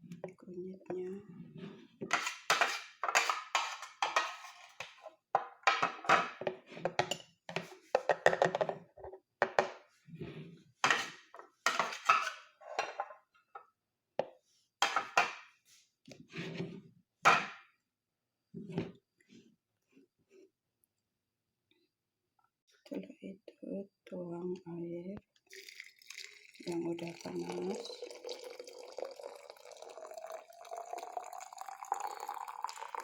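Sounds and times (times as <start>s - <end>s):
dishes and utensils clattering: 2.1s - 8.8s, 10.8s - 13.2s, 14.8s - 15.4s.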